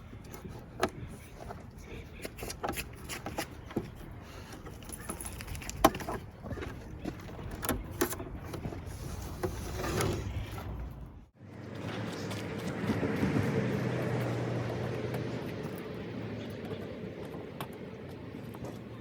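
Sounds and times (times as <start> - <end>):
loose objects clattering and jingling: 2.4 - 8.8.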